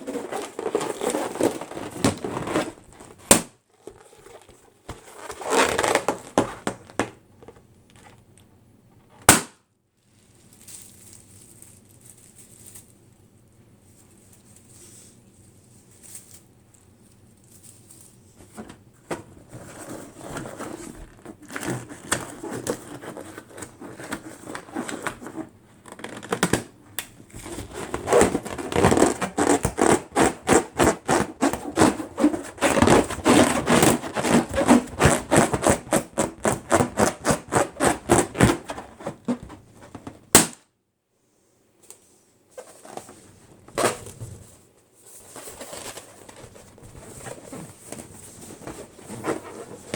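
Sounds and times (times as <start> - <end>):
balloon rubbing and squeaking: 0.0 - 3.4, 27.4 - 40.4
balloon popping: 3.2 - 3.5, 9.2 - 9.6, 27.8 - 40.6.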